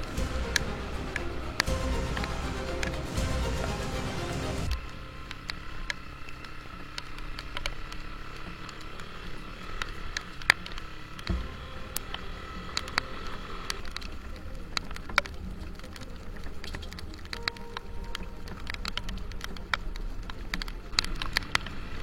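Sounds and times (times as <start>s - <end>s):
motorcycle engine running: 4.6s - 17.0s.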